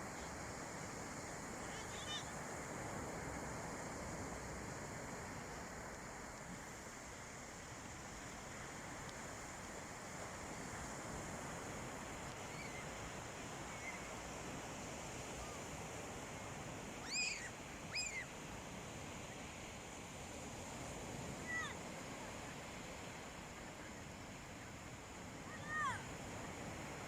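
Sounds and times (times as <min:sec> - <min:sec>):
sea waves breaking on shore: 0:00.0 - 0:27.0
short high arching calls: 0:12.5 - 0:12.9, 0:17.0 - 0:18.3.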